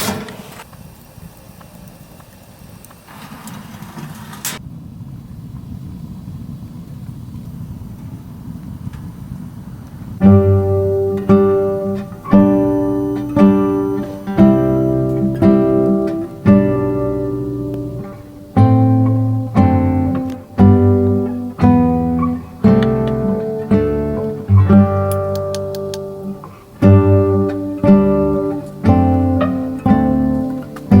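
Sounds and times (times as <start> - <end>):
acoustic guitar strumming chords: 10.2 - 31.0.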